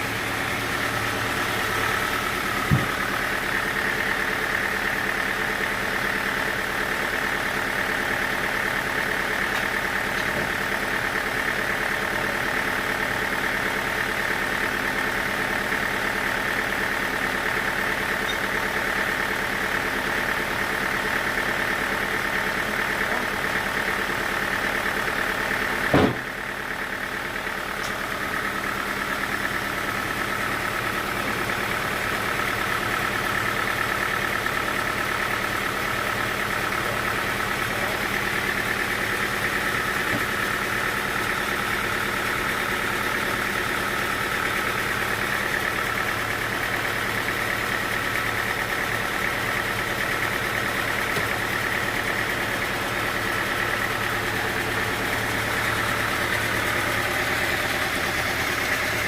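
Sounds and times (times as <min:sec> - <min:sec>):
sawmill machinery humming: 0:00.0 - 0:59.0.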